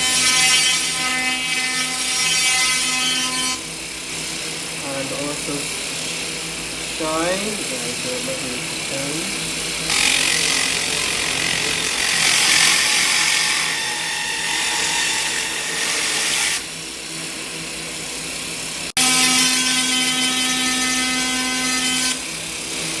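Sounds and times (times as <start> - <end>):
machine hum: 0.0 - 23.0
steady machine whine: 3.1 - 21.3
laser cleaning machine hiss: 4.0 - 9.5.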